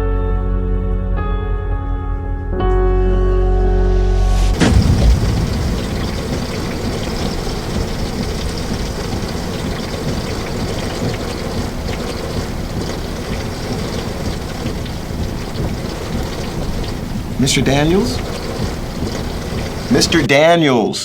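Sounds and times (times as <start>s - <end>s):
thunder crack: 4.0s - 20.3s
heavy rain: 4.5s - 20.3s.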